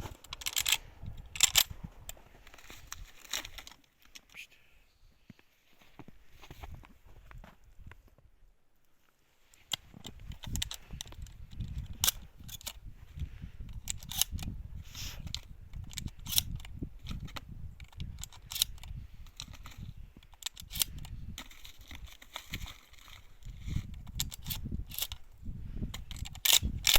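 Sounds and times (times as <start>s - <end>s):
sharp cracks and clicks: 15.3s - 21.0s, 26.0s - 26.9s.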